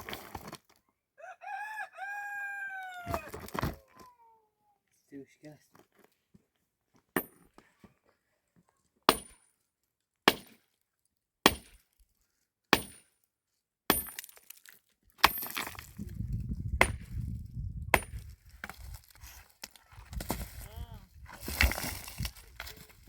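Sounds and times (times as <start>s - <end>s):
tool striking wood: 11.5s - 11.8s, 12.8s - 13.0s.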